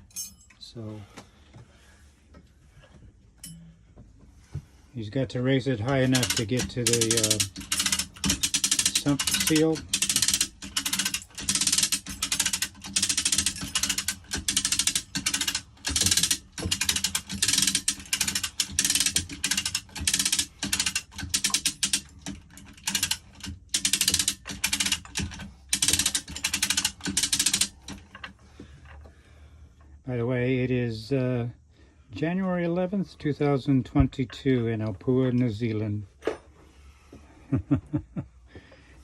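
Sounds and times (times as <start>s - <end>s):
hoist ratchet clicking: 5.8s - 28.3s.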